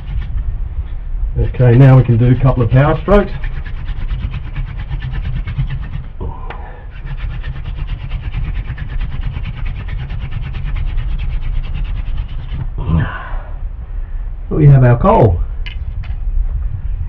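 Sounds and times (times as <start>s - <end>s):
wood rubbing on wood: 0.0s - 0.4s, 1.4s - 12.8s.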